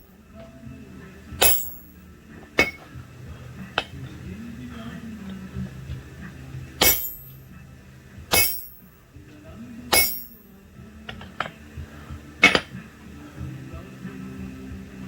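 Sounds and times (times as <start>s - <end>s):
hammer ringing on anvil: 1.4s - 2.0s, 2.6s - 2.9s, 6.8s - 7.4s, 8.3s - 8.9s, 9.9s - 10.5s, 12.4s - 12.8s.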